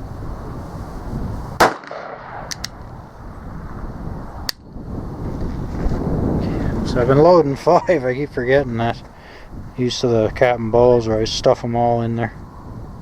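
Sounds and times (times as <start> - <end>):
revolver shots: 1.6 - 2.7.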